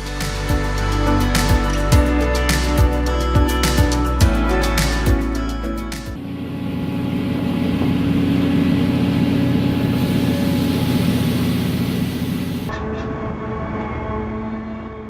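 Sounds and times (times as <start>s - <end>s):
heavy diesel engine running: 6.2s - 12.7s.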